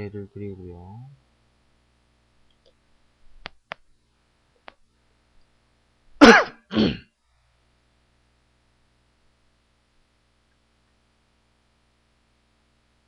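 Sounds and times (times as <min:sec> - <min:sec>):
soft mouse clicks: 0:02.5 - 0:02.8
man clearing his throat: 0:06.2 - 0:07.1.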